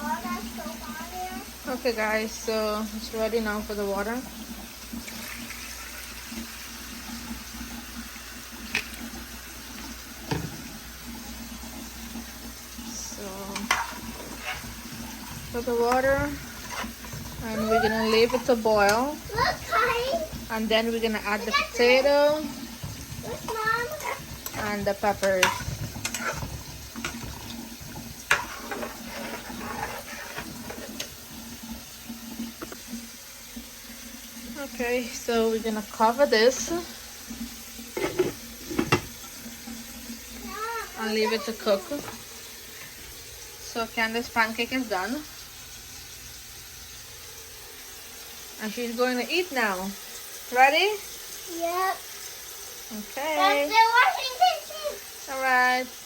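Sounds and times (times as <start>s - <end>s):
kitchen tap running: 0.0s - 56.0s
utensil clinking on pot: 22.8s - 31.1s.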